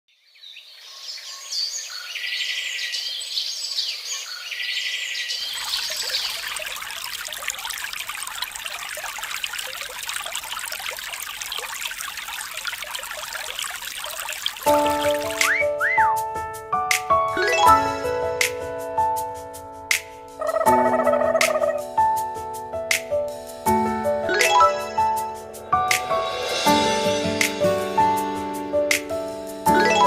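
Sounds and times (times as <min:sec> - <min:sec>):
trickling splashing water: 0:05.4 - 0:15.7
birds singing and chirping: 0:14.8 - 0:16.2.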